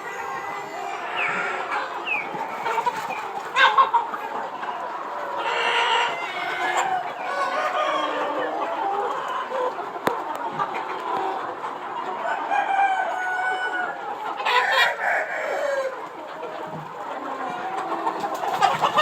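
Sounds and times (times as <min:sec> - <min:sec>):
chickens clucking: 0:00.0 - 0:19.0
roosters crowing: 0:05.5 - 0:08.6, 0:12.2 - 0:16.1.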